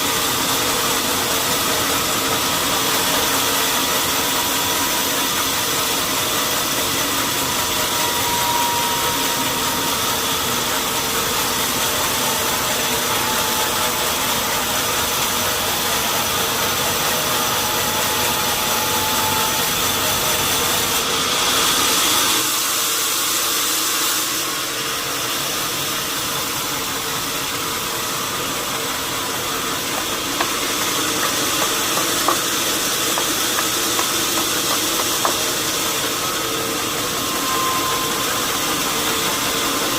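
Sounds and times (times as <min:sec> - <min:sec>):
sawmill machinery drone: 0:00.0 - 0:39.9.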